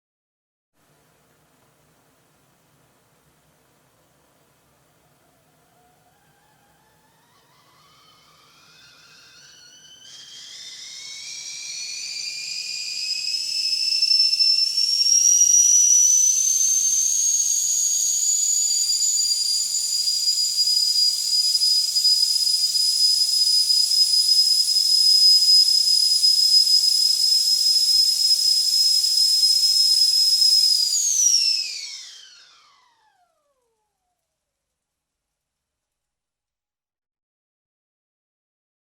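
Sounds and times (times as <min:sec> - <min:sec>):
kettle whistling: 0:04.8 - 0:33.8
steam hissing: 0:05.7 - 0:17.4, 0:18.1 - 0:32.0.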